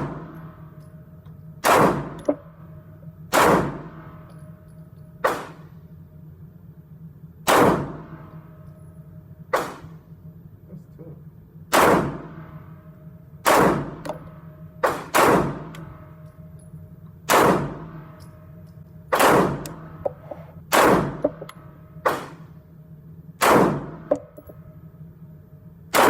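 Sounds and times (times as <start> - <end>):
pistol shots with ringing echo: 0.0 - 0.8, 1.6 - 5.9, 7.4 - 8.8, 9.5 - 10.1, 11.7 - 16.6, 17.2 - 22.6, 23.4 - 24.5.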